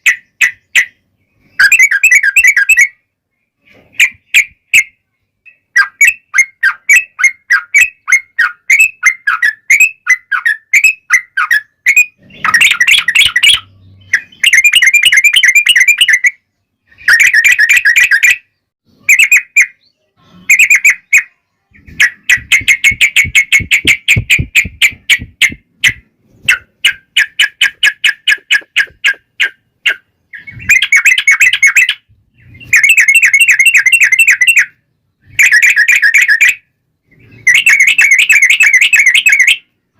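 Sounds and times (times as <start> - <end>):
bulbul chattering: 3.9 - 18.5, 19.1 - 39.6.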